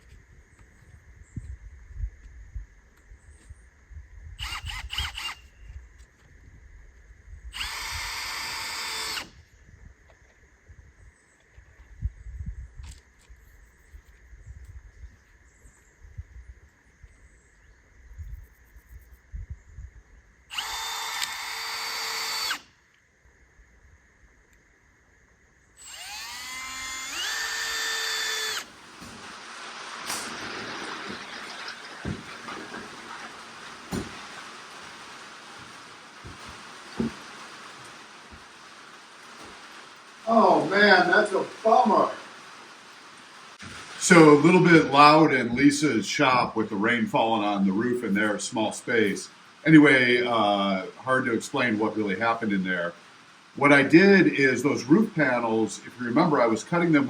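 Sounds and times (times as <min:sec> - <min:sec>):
power drill spinning: 0:04.4 - 0:05.8, 0:07.5 - 0:09.4, 0:20.5 - 0:22.8, 0:25.8 - 0:45.1
rain on roof: 0:28.6 - 0:45.2, 0:49.2 - 0:55.5.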